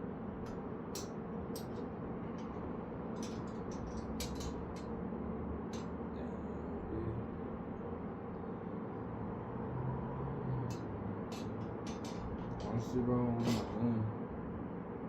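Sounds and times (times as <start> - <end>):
low background hum: 0.0 - 15.0
light clicks and taps: 10.7 - 12.8.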